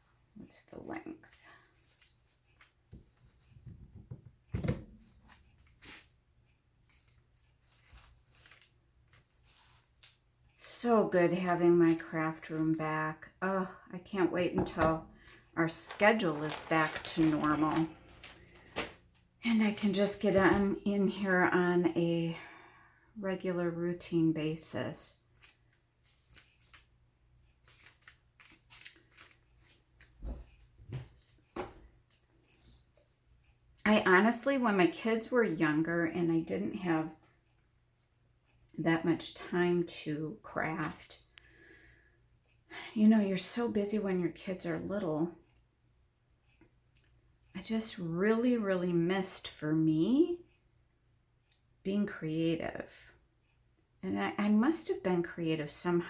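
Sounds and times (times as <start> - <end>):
rustling of craft materials: 0.0 - 21.4, 24.6 - 33.9
paper rustling: 6.8 - 10.2, 15.2 - 19.0, 25.3 - 26.9, 27.5 - 32.2.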